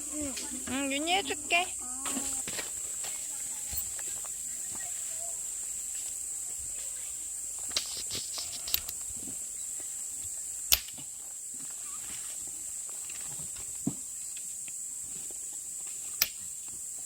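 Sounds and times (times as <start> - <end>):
insect chirring: 0.0 - 17.0
sharp clicks: 10.7 - 11.0.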